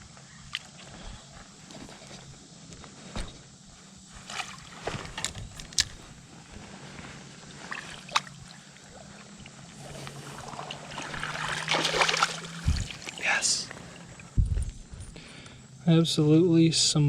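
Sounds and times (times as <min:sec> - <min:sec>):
creek water sloshing and splashing: 0:04.2 - 0:05.3, 0:07.5 - 0:14.2
sharp splashes: 0:09.8 - 0:13.2.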